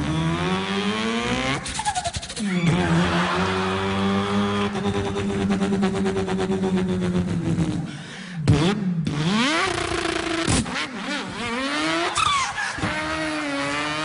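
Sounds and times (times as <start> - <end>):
man imitating car engine: 0.0 - 10.2.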